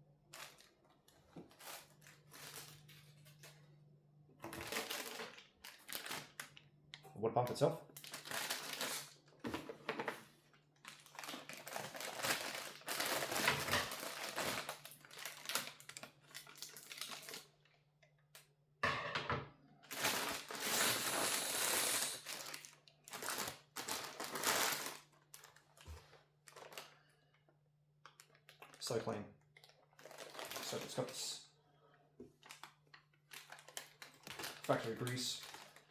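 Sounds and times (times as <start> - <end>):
packaging crinkling: 0.3 - 3.7, 4.4 - 6.7, 7.9 - 9.4, 10.8 - 17.7, 19.9 - 27.1, 29.6 - 31.3, 32.4 - 35.9.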